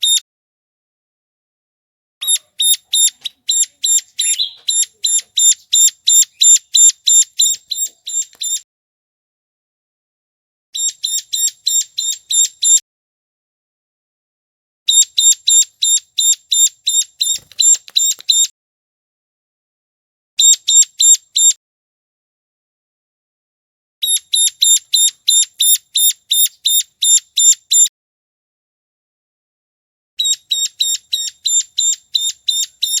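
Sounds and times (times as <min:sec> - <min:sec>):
bird high chip notes: 0:02.2 - 0:08.6.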